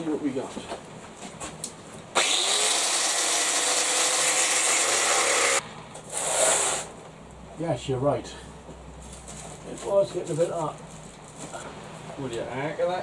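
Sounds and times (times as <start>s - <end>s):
power cutting tool whining: 2.2s - 6.9s.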